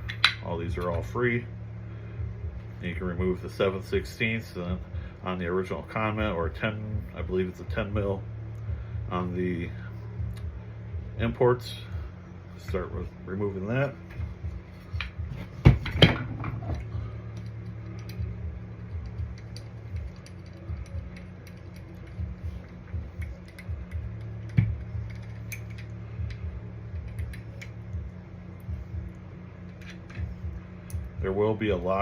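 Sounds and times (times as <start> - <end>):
ratchet wrench clicking: 18.9 - 27.8.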